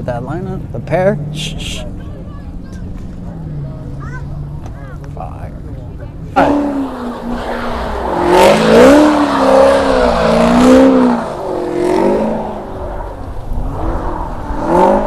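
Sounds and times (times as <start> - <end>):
car engine revving hard: 6.4 - 15.0.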